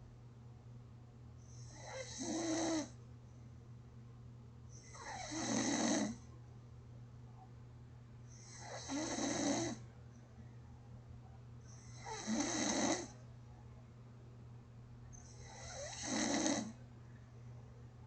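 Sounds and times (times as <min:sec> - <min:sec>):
faint low hum: 0:00.0 - 0:18.0
person snoring: 0:01.6 - 0:02.9, 0:04.9 - 0:06.2, 0:08.4 - 0:09.8, 0:12.0 - 0:13.1, 0:15.4 - 0:16.8.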